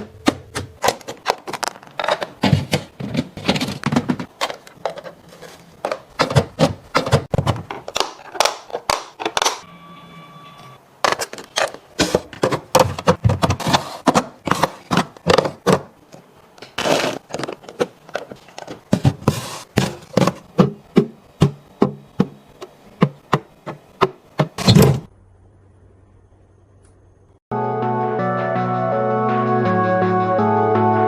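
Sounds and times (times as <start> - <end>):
plastic containers clicking and knocking: 0.0 - 9.6, 11.0 - 24.7
scraping and rustling: 0.8 - 7.5.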